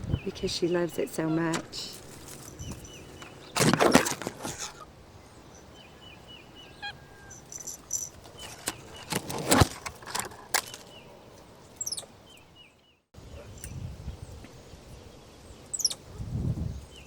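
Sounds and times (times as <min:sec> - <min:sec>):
rustling and brushing: 0:01.7 - 0:04.8, 0:07.4 - 0:11.6
thin high chirps: 0:06.6 - 0:08.6.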